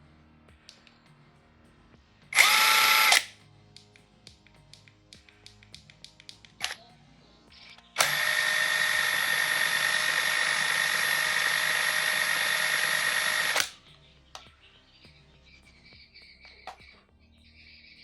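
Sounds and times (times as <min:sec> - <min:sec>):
cordless impact driver running: 0:02.4 - 0:03.3, 0:08.0 - 0:13.8.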